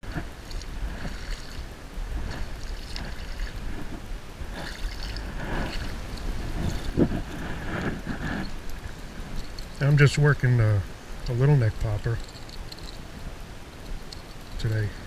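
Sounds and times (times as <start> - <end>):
water lapping and splashing: 0.0 - 10.6
low rumble: 0.0 - 10.9.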